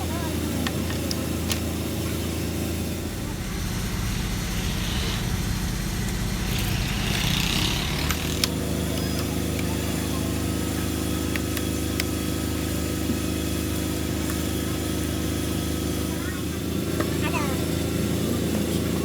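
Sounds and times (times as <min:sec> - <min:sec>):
engine running: 0:00.0 - 0:19.0
sharp metallic clicks: 0:06.0 - 0:09.6.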